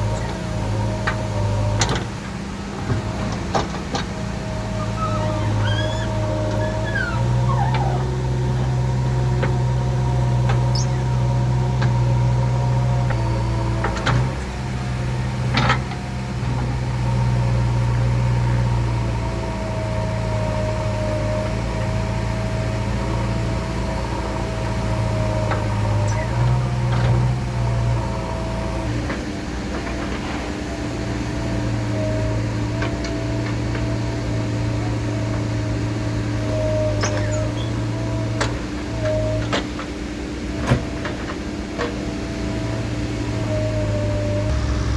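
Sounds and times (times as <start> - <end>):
diesel engine under load: 0.0 - 44.9
steady whine: 44.2 - 44.9.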